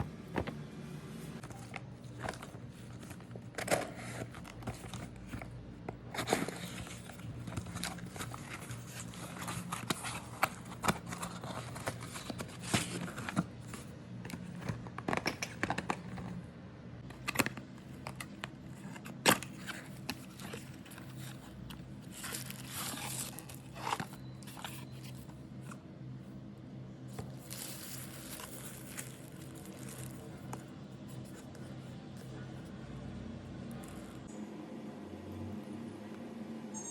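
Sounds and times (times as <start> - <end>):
plastic crinkling: 17.3 - 25.2, 27.2 - 30.7
packaging tearing: 27.4 - 30.3.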